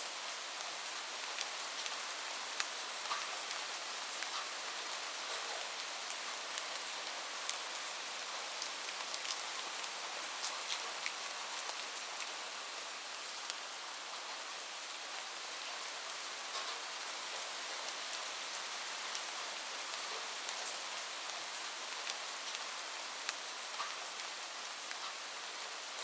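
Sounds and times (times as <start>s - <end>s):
rain falling on a roof: 0.0s - 26.0s.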